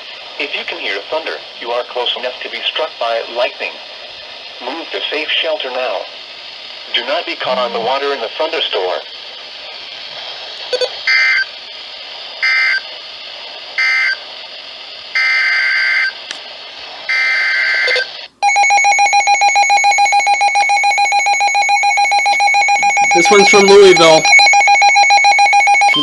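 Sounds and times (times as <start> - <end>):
radio hiss: 0.0 - 18.3, 22.9 - 24.4
rapidly pulsing alert tone: 7.4 - 8.2
screechy digital data bursts: 21.8 - 26.0.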